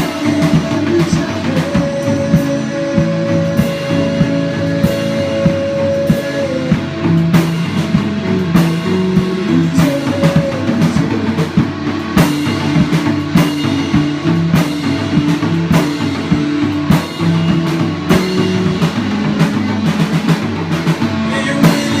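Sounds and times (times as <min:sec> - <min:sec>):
drum kit beat: 0:00.0 - 0:22.0
electric guitar: 0:00.0 - 0:22.0.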